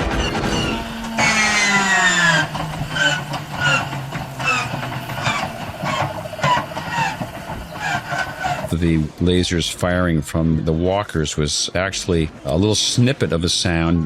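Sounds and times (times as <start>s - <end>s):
falling squeaky laser blasts: 0.0s - 2.3s.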